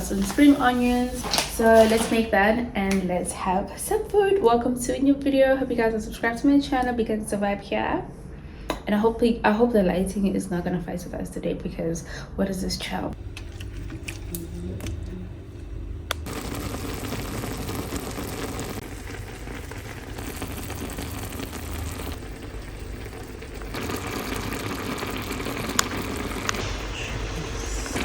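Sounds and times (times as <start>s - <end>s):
noodles bubbling in a pot: 16.1s - 28.0s.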